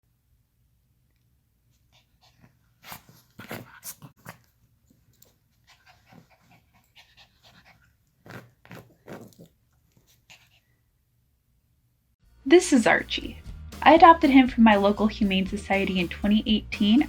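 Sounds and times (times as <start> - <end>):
dog panting quietly: 1.7 - 10.8.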